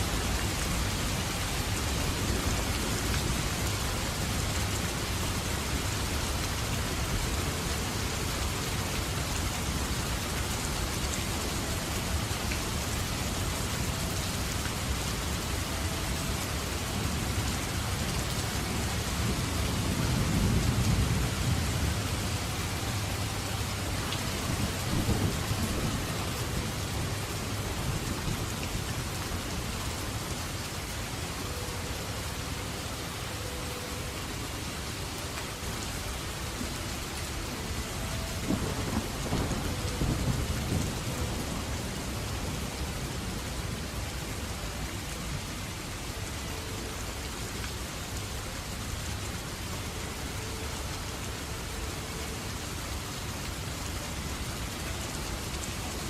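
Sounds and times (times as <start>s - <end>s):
heavy rain: 0.0s - 56.0s
thunder rumbling: 18.9s - 29.2s, 38.1s - 43.3s.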